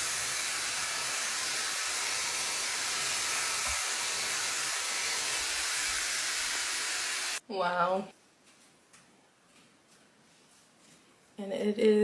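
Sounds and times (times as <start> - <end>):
hair dryer blowing air: 0.0 - 7.4.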